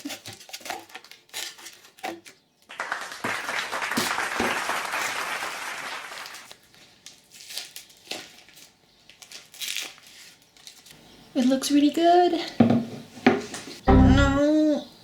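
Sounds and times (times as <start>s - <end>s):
wrapping crinkling: 0.0s - 2.2s, 6.2s - 11.0s.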